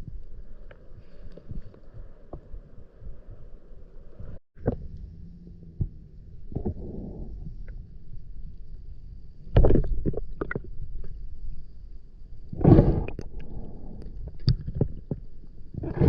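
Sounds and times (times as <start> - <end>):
muffled underwater water noise: 0.0 - 16.0.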